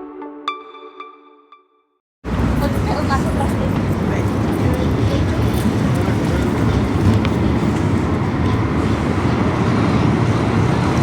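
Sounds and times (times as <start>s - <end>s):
tram rumbling on rails: 2.3s - 11.0s.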